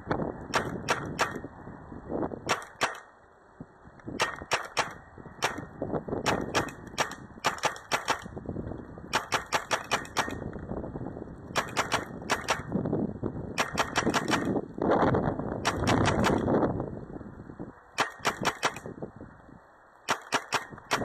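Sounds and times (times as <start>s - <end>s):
paintball marker shots: 0.5s - 1.5s, 2.4s - 3.1s, 4.2s - 8.4s, 9.1s - 10.5s, 11.5s - 12.8s, 13.6s - 14.6s, 15.6s - 16.5s, 18.0s - 19.0s, 20.1s - 21.0s.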